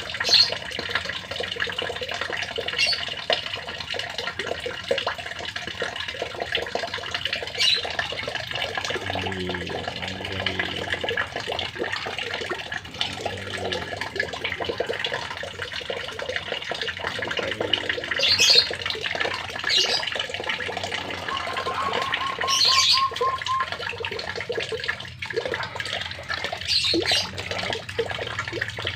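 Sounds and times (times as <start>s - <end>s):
water running: 0.0s - 28.9s
bird chirping: 21.0s - 24.1s.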